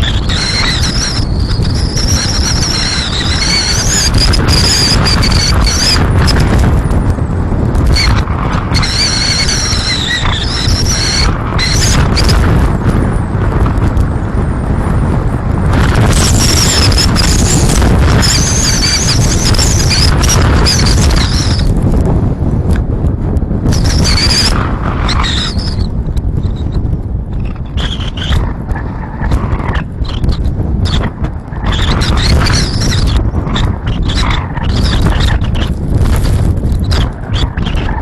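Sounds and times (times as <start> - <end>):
high wavering wind whistle: 0.0 - 13.2, 14.3 - 22.3, 23.6 - 35.8
wind buffeting microphone: 0.0 - 38.0.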